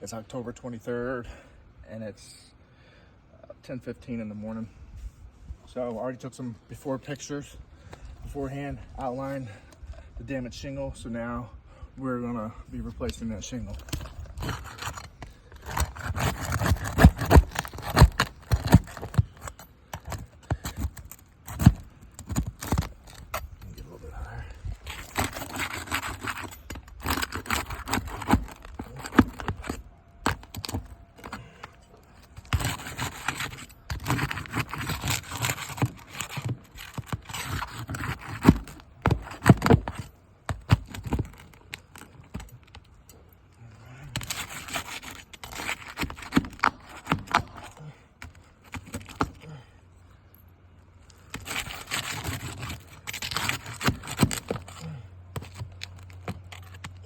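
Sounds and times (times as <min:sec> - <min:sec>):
pry tool scraping under shingles: 0:13.0 - 0:49.6, 0:51.0 - 0:57.0.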